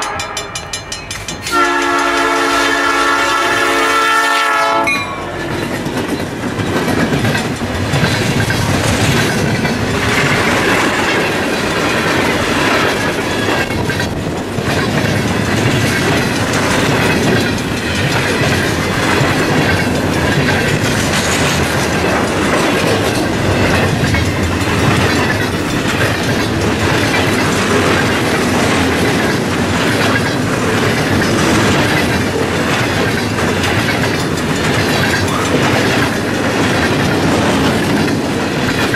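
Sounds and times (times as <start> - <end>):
freight train wheels rumbling: 0.0 - 38.9
wheels clicking over rail joints: 4.6 - 38.9.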